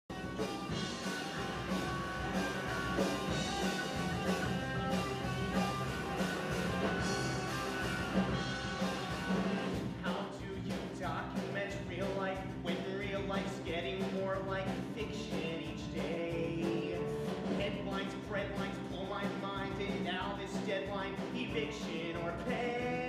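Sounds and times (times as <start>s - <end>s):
rock music with guitar: 0.0s - 23.0s.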